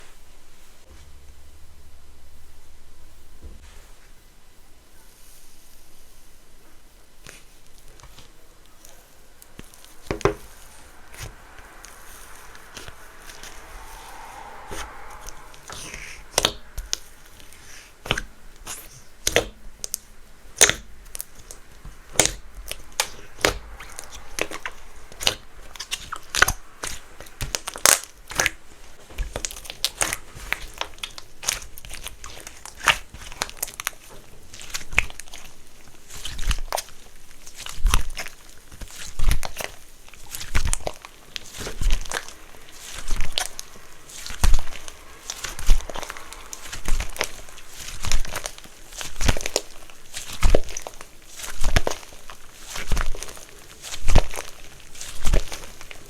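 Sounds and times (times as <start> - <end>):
sticky slime clicks and pops: 19.2 - 20.0, 20.6 - 20.9.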